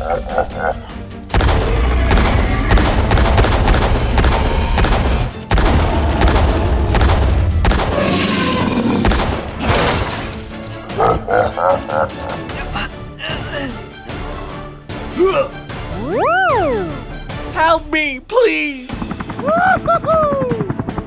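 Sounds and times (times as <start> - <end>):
background music: 0.0 - 21.0
rapid gunfire-like bangs: 1.3 - 8.3, 9.0 - 10.0, 18.8 - 21.0
heavy booms: 1.3 - 10.0
deep rumble: 1.4 - 9.4.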